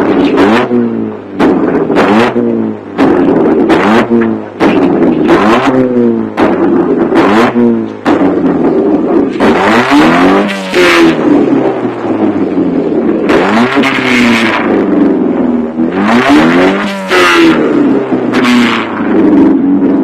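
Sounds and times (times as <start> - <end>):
car engine revving: 0.0 - 20.0
exhaust crackles and bangs: 0.0 - 20.0.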